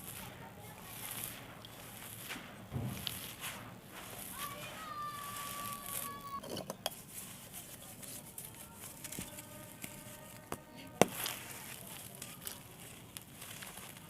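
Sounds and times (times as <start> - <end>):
sand-clay blocks crumbling: 0.0 - 14.0
crisp pops and cracks: 9.1 - 14.0.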